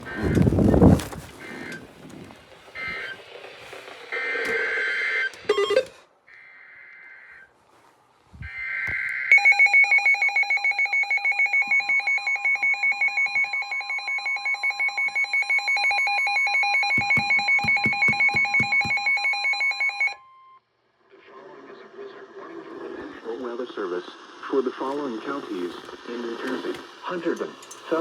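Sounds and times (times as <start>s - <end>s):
rapidly pulsing alarm tone: 8.5s - 20.5s
steady attention tone: 16.6s - 20.3s.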